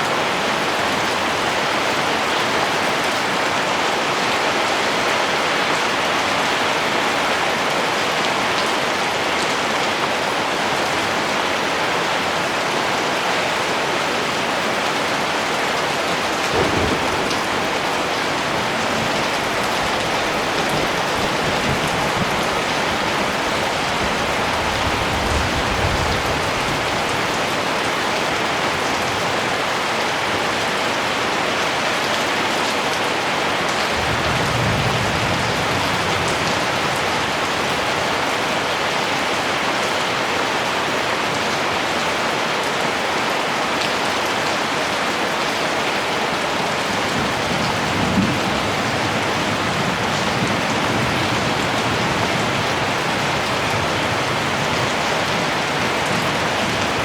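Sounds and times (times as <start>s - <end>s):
heavy rain: 0.0s - 57.0s
distant thunder rumbling: 16.4s - 27.4s.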